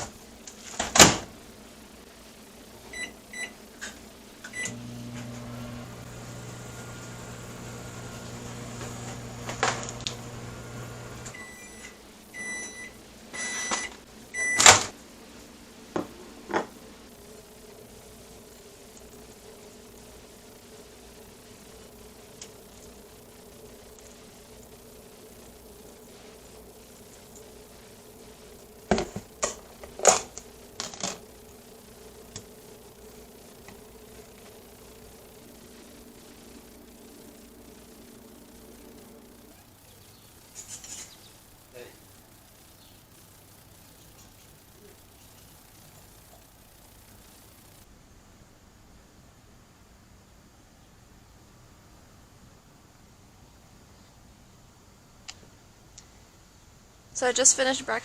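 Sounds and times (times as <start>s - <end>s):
microwave oven humming: 0.0s - 15.0s, 16.6s - 47.9s
microwave beeping: 2.9s - 3.6s, 4.4s - 14.9s.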